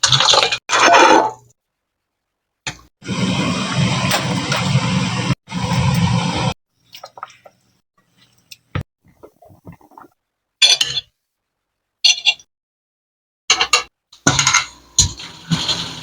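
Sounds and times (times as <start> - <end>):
utensils and dishes clinking: 13.5 - 16.0.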